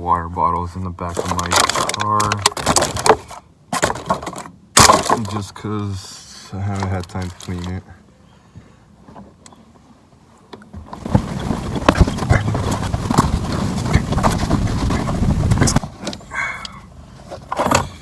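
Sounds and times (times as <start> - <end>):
knocks and bumps: 1.1 - 5.5, 10.7 - 16.3
fabric rustling: 10.9 - 16.0.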